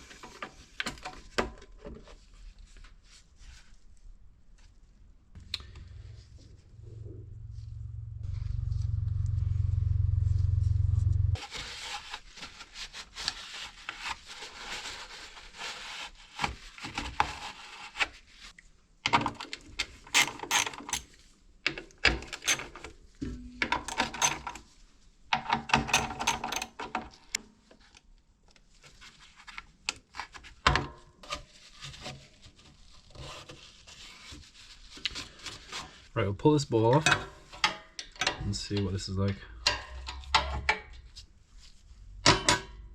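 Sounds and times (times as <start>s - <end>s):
steady low hum: 5.4s - 11.4s
tools and parts rattling: 19.1s - 21.2s, 22.0s - 24.7s, 25.4s - 27.4s.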